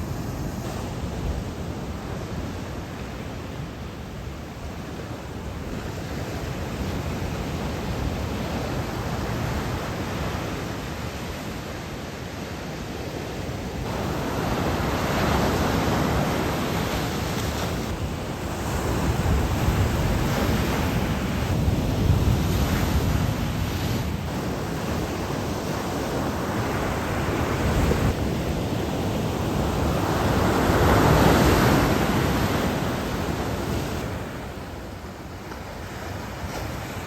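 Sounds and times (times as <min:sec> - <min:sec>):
ocean surf breaking: 0:00.0 - 0:37.0
wind buffeting microphone: 0:13.2 - 0:37.0.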